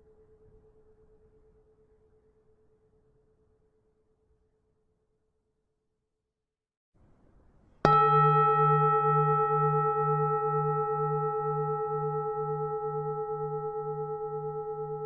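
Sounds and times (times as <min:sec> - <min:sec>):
temple bell ringing: 0:07.9 - 0:15.0.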